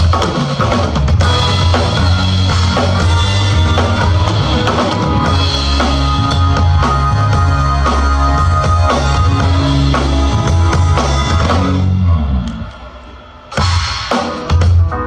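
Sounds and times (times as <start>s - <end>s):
band playing pop-rock: 0.0s - 13.0s
bass line: 1.0s - 12.9s.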